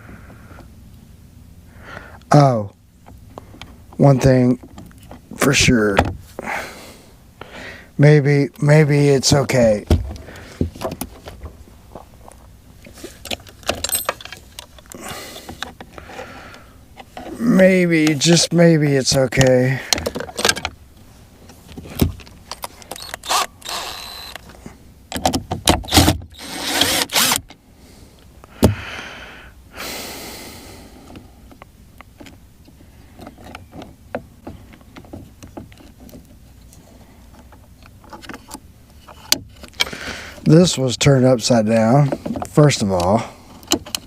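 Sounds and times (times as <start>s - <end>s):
small parts clicking and scraping: 10.8s - 16.3s, 19.4s - 27.6s.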